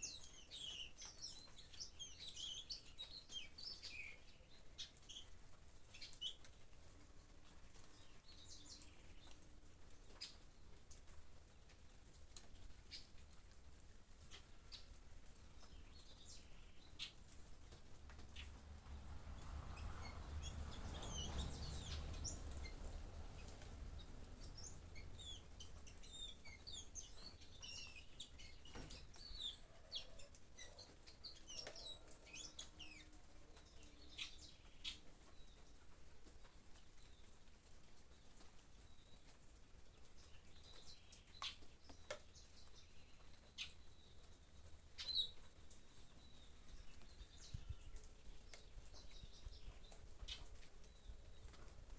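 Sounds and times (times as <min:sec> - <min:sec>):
small birds chirping: 0:00.0 - 0:11.6, 0:12.4 - 0:13.5, 0:14.1 - 0:51.9
light rain: 0:00.0 - 0:51.9
sharp water drips: 0:12.3 - 0:29.5.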